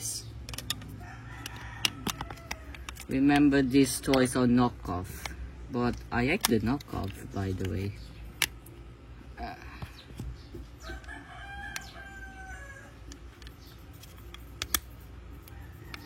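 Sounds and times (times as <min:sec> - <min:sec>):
plastic pieces clicking: 0:00.4 - 0:08.8, 0:13.0 - 0:16.0.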